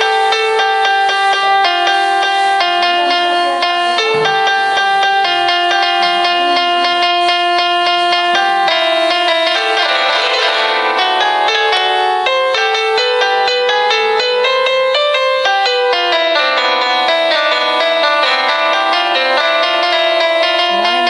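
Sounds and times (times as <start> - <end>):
piano ringtone melody: 0.0 - 21.0.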